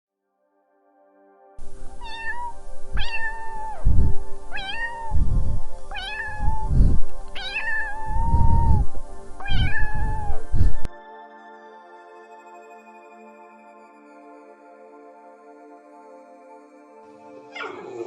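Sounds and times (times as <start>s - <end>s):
background music: 0.4s - 18.0s
low rumble: 1.6s - 10.9s
cat meowing: 1.9s - 8.8s, 9.4s - 10.8s, 17.6s - 18.0s.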